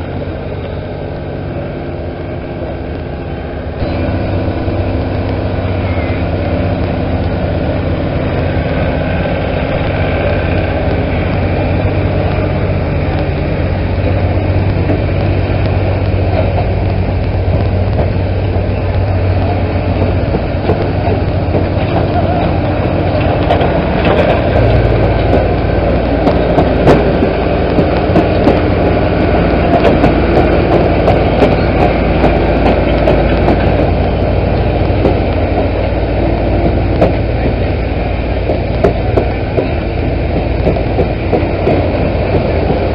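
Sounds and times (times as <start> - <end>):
heavy equipment engines: 0.0 - 42.9.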